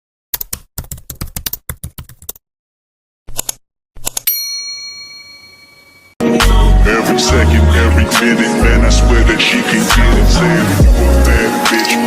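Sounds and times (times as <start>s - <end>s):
typewriter bell ding: 4.2s - 6.2s.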